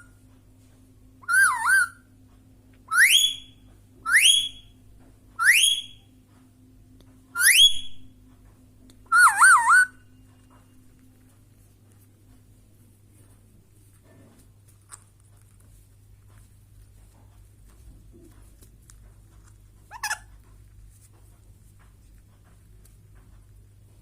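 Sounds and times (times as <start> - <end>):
parrot whistling: 1.2 - 2.1, 2.9 - 4.6, 5.4 - 6.0, 7.4 - 8.0, 9.1 - 10.0, 19.9 - 20.2.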